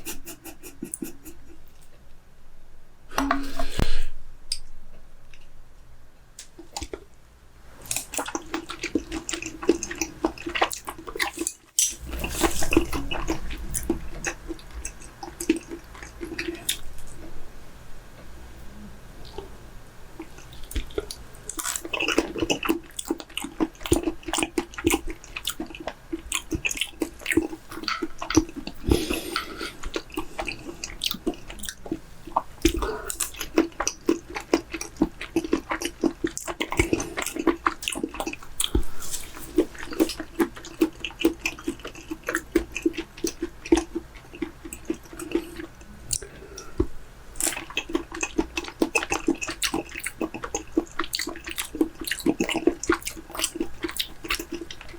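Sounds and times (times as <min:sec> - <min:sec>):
wet chewing mouth sounds: 0:20.2 - 0:54.9.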